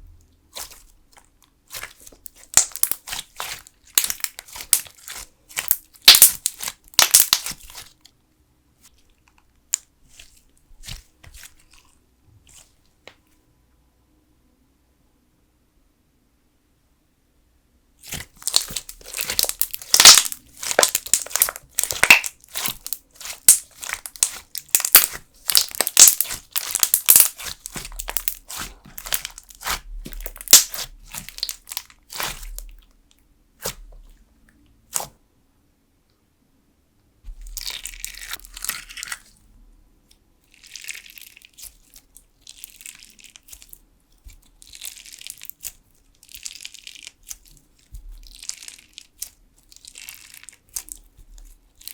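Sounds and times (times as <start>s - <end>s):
crunchy slime squeezes: 0.5s - 8.1s, 18.0s - 32.9s, 33.6s - 34.2s, 34.9s - 35.2s, 37.3s - 39.4s, 40.5s - 51.9s
slime crackling and popping: 0.5s - 8.1s, 18.0s - 32.9s, 33.6s - 34.1s, 37.3s - 39.3s, 40.5s - 51.9s.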